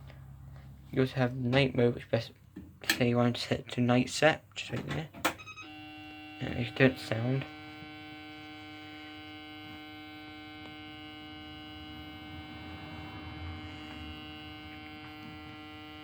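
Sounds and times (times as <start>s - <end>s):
alarm panel buzzer tone: 5.2s - 16.0s.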